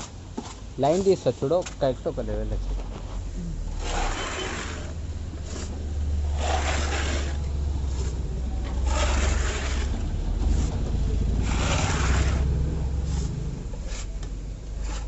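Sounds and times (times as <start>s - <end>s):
plastering tool scraping wall: 3.7s - 12.5s, 13.1s - 15.0s.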